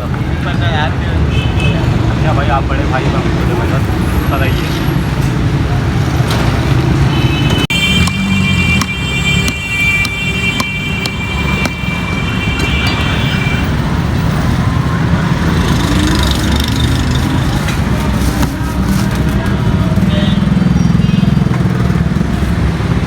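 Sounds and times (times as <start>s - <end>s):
road traffic rumble: 0.0s - 23.0s
sharp knocks: 8.0s - 12.0s.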